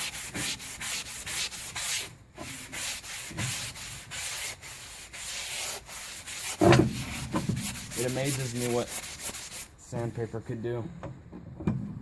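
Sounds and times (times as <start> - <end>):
sanding sponge rubbing wood: 0.0 - 9.7
thump: 6.6 - 7.7.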